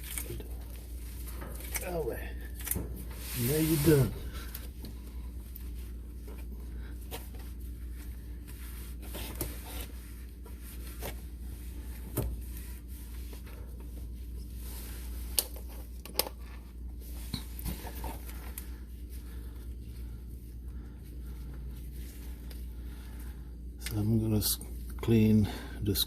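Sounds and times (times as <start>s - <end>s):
steady low hum: 0.0s - 26.0s
faint rubbing: 3.0s - 4.6s.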